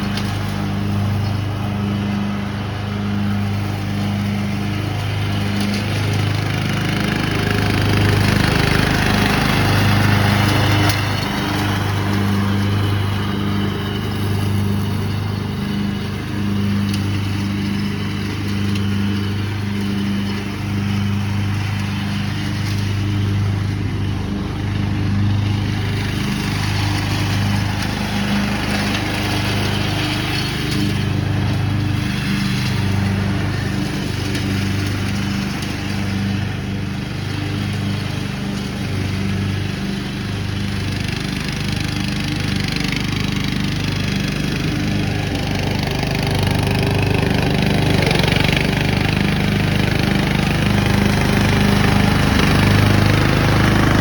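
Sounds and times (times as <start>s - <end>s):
riding lawn mower engine: 0.0s - 54.0s
cutting deck rushing: 42.4s - 54.0s.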